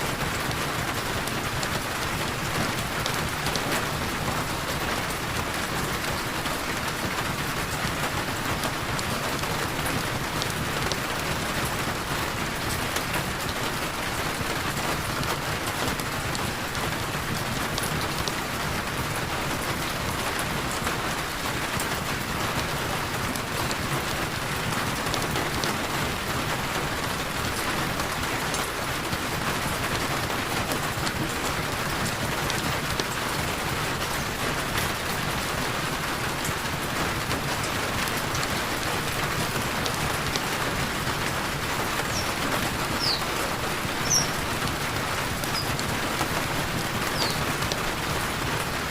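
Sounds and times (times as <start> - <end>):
heavy rain: 0.0 - 48.9.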